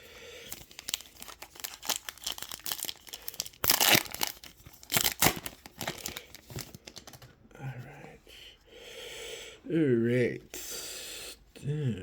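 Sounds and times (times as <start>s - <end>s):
plastic wrapper crinkling: 0.5s - 7.3s
plastic wrapper tearing: 0.5s - 7.3s.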